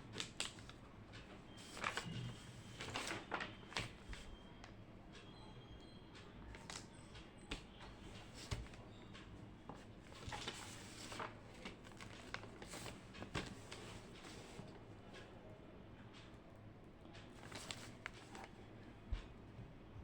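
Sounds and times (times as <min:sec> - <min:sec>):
low steady room hum: 0:00.0 - 0:20.0
paper rustling: 0:00.1 - 0:00.8, 0:01.5 - 0:04.3, 0:07.5 - 0:08.9, 0:09.7 - 0:14.7, 0:17.3 - 0:18.6.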